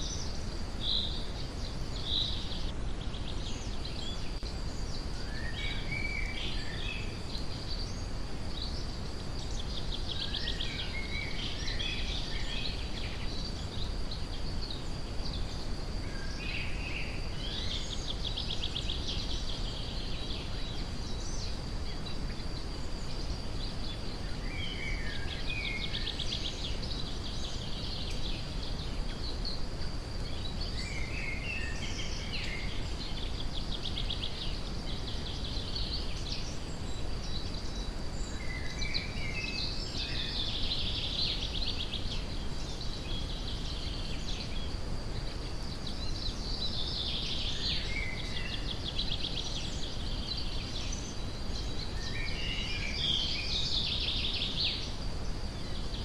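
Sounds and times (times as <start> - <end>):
songbirds singing: 0.0 - 56.0.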